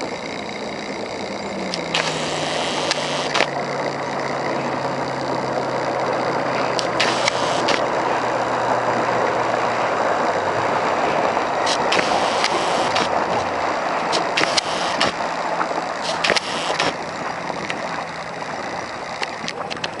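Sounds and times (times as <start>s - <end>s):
low boat engine tone: 0.0s - 20.0s
wind: 0.0s - 20.0s
sharp clicks and knocks: 1.7s - 3.6s, 6.2s - 7.9s, 11.6s - 17.0s
water rushing: 1.7s - 20.0s.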